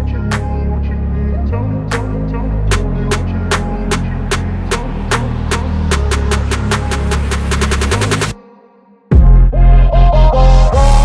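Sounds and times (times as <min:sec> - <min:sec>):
music with heavy bass and beat: 0:02.7 - 0:08.4, 0:09.1 - 0:11.0.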